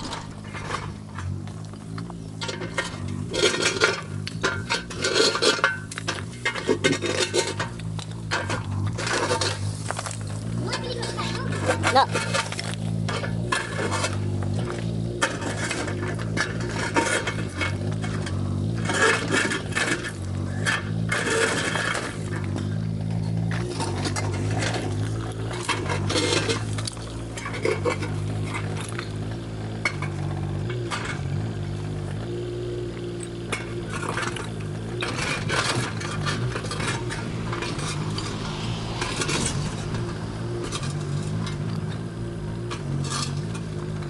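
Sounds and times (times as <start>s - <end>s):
bucket scraping rubble: 0.0s - 22.7s, 23.3s - 29.1s, 33.8s - 38.3s
excavator diesel engine running: 0.0s - 44.0s.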